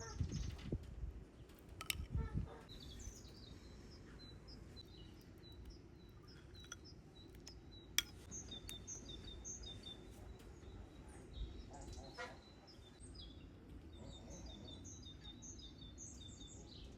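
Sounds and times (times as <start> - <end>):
small birds chirping: 0.0 - 16.9.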